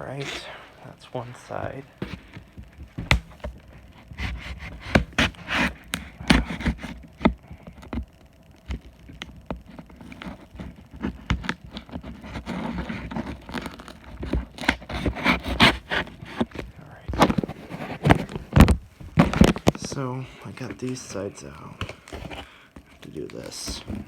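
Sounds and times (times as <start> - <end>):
cardboard scraping and rubbing: 0.0 - 0.6, 1.4 - 7.4, 9.7 - 24.0
cardboard knocks and crackles: 2.0 - 8.1, 9.9 - 20.0.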